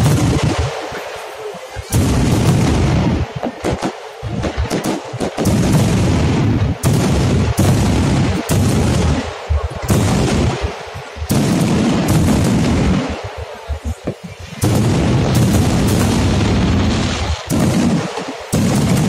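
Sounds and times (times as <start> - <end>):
fireworks shells bursting: 0.0 - 13.4.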